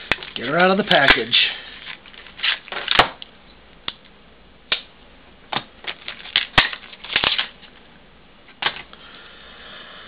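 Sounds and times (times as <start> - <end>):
plastic rustling: 0.0 - 3.2, 5.8 - 7.8
plastic packaging cracking: 0.0 - 3.3, 5.5 - 7.7.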